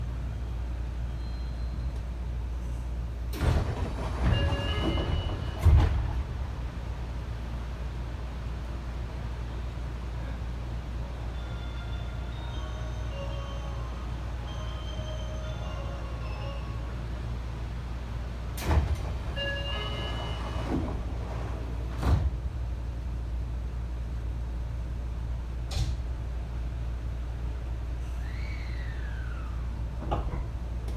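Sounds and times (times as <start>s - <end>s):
train low hum: 0.0s - 30.9s
train doors sliding: 1.0s - 30.9s
train doors thudding shut: 3.3s - 7.8s, 18.3s - 23.3s, 25.6s - 26.5s, 27.9s - 30.9s.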